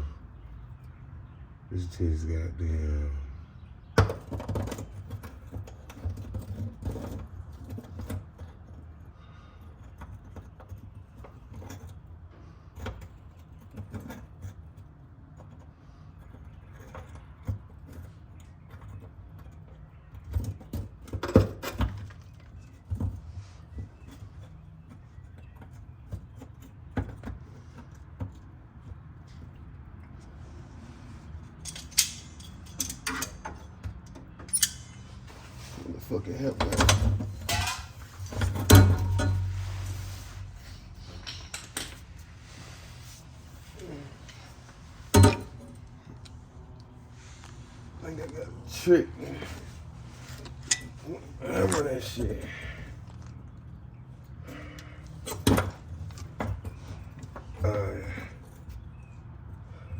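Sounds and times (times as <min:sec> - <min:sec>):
low steady hum: 0:29.2 - 0:59.9
hand tools clinking on metal: 0:31.6 - 0:33.7, 0:36.6 - 0:40.1, 0:45.1 - 0:45.7, 0:50.4 - 0:52.9.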